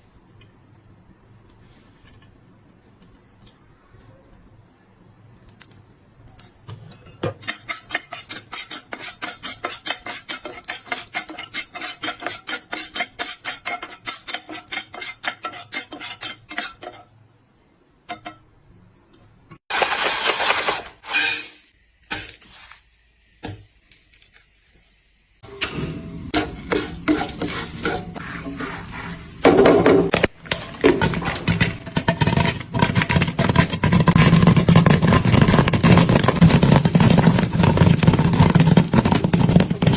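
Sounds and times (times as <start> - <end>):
popcorn popping in a pot: 5.5 - 17.1, 29.4 - 39.9
kitchenware clattering and rustling: 26.4 - 39.9.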